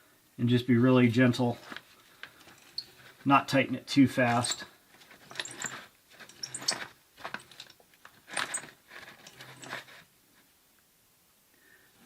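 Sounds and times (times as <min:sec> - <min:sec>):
pipe cutter wheel scraping: 0:04.3 - 0:10.0.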